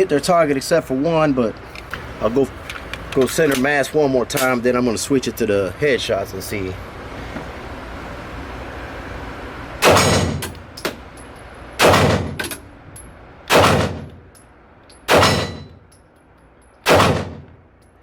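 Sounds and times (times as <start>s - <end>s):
pistol shots echoing indoors: 9.8s - 10.4s, 11.8s - 12.4s, 13.5s - 14.2s, 15.1s - 15.7s, 16.8s - 17.6s.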